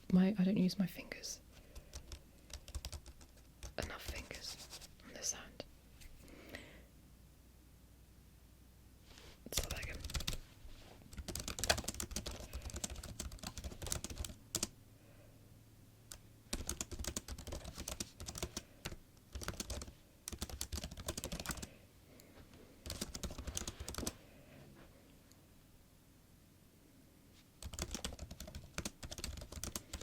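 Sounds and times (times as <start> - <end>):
laptop keyboard typing: 1.7 - 4.3, 9.6 - 10.4, 11.1 - 14.7, 16.1 - 21.7, 22.8 - 24.2, 27.6 - 30.0.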